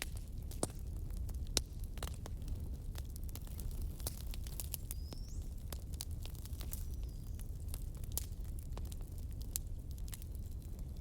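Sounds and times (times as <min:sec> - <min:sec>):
burning logs crackling: 0:00.0 - 0:11.0
low rumble of fire: 0:00.0 - 0:11.0.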